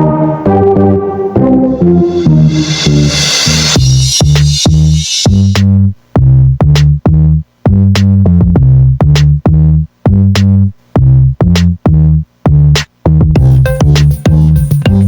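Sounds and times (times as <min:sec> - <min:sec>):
electronic music with drum-machine beat: 0:00.0 - 0:05.7, 0:13.2 - 0:15.0.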